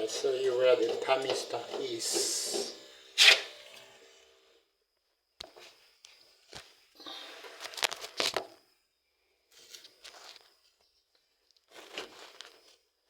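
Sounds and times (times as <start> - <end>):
scraping and rustling: 11.6 - 12.9.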